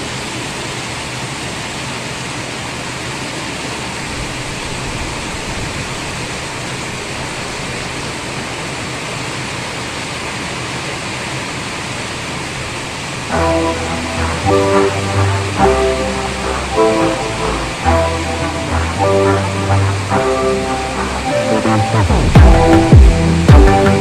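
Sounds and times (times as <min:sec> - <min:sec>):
heavy rain falling: 0:00.0 - 0:24.0.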